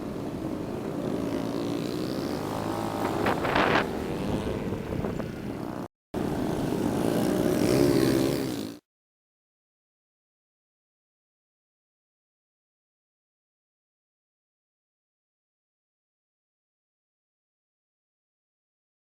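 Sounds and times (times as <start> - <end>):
motorcycle engine running: 0.0 - 8.8
wind noise: 2.4 - 5.9.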